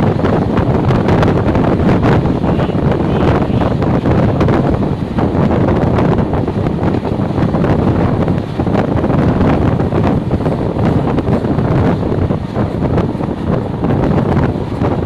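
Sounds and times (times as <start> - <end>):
moving train rumble: 0.0 - 15.0
wind buffeting microphone: 0.0 - 15.0.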